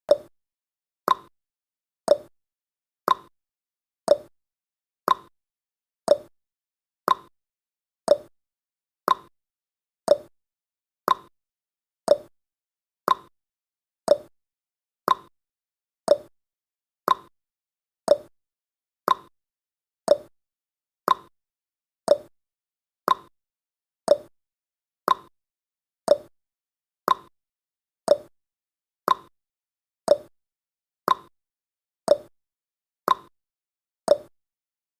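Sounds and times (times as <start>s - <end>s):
timer ticking: 0.1s - 0.3s, 1.1s - 1.3s, 2.1s - 2.3s, 3.1s - 3.3s, 4.1s - 4.3s, 5.1s - 5.3s, 6.1s - 6.3s, 7.1s - 7.3s, 8.1s - 8.3s, 9.1s - 9.3s, 10.1s - 10.3s, 11.1s - 11.3s, 12.1s - 12.3s, 13.1s - 13.3s, 14.1s - 14.3s, 15.1s - 15.3s, 16.1s - 16.3s, 17.1s - 17.3s, 18.1s - 18.3s, 19.1s - 19.3s, 20.1s - 20.3s, 21.1s - 21.3s, 22.1s - 22.3s, 23.1s - 23.3s, 24.1s - 24.3s, 25.1s - 25.3s, 26.1s - 26.3s, 27.1s - 27.3s, 28.1s - 28.3s, 29.1s - 29.3s, 30.1s - 30.3s, 31.1s - 31.3s, 32.1s - 32.3s, 33.1s - 33.3s, 34.1s - 34.3s.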